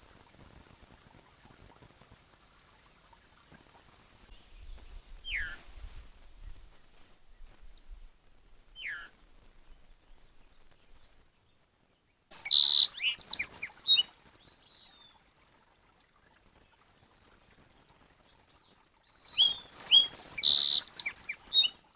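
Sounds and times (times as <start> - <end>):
songbird chirping and whistling: 5.2 - 5.6, 8.8 - 9.1, 12.3 - 14.8, 19.1 - 21.8
soft bird call: 8.8 - 9.1, 12.3 - 15.1, 19.2 - 21.8.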